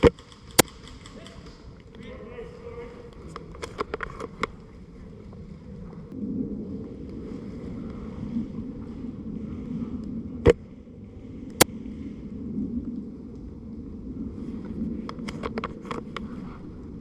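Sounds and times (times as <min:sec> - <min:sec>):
sharp snaps: 0:00.0 - 0:02.0
wind rumble on microphone: 0:00.0 - 0:17.0.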